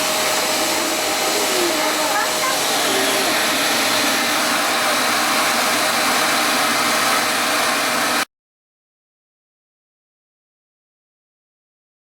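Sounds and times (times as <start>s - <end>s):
vacuum cleaner running: 0.0s - 8.3s.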